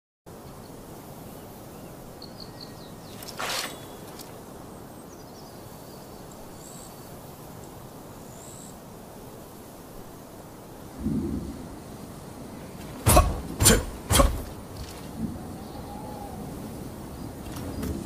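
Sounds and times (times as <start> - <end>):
outdoor background hiss: 0.3 - 18.0
faint bird chirps: 0.6 - 7.1, 14.8 - 18.0
sword blade swishing: 3.2 - 4.2, 13.1 - 14.5.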